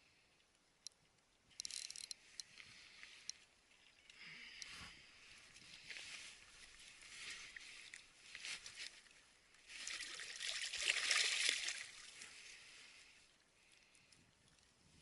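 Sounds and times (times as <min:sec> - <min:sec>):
water trickling and splashing: 0:05.5 - 0:15.0.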